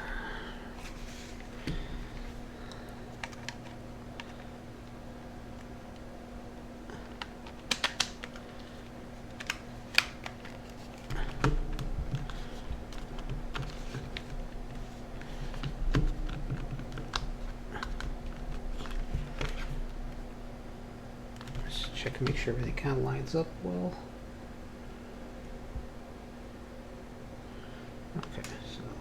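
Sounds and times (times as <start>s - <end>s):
plastic parts clicking: 3.1s - 4.4s, 7.0s - 8.7s, 9.3s - 14.4s.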